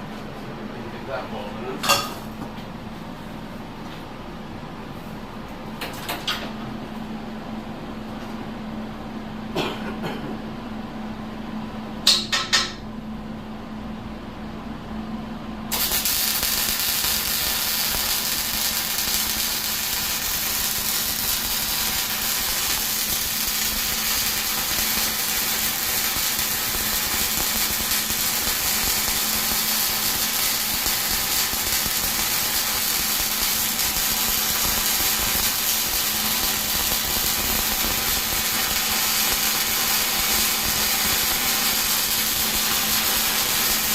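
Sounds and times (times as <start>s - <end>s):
arc welder crackling: 15.7s - 43.9s.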